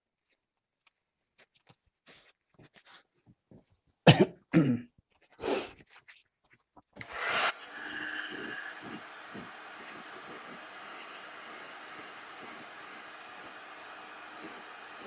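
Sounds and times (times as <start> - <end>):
man coughing: 4.1 - 4.9
throat clearing: 4.1 - 4.9
hot-air gun blowing: 7.0 - 15.0.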